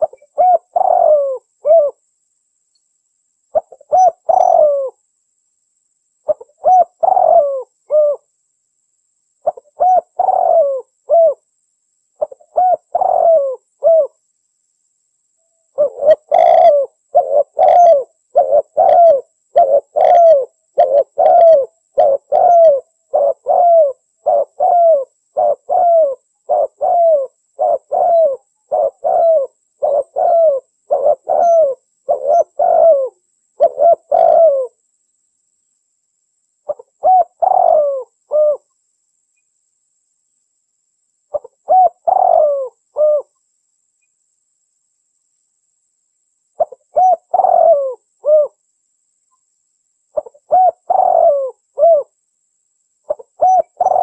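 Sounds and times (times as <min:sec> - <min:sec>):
doves cooing: 0:00.0 - 0:02.0, 0:03.6 - 0:05.0, 0:06.3 - 0:08.2, 0:09.4 - 0:11.4, 0:12.2 - 0:14.1, 0:15.8 - 0:34.8, 0:36.7 - 0:38.7, 0:41.3 - 0:43.3, 0:46.6 - 0:48.6, 0:50.2 - 0:52.1, 0:53.1 - 0:54.0.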